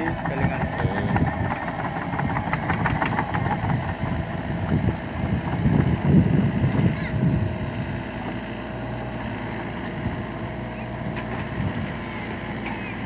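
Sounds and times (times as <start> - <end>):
wind buffeting microphone: 0.0 - 8.2, 11.3 - 12.0
excavator engine running: 0.0 - 13.0.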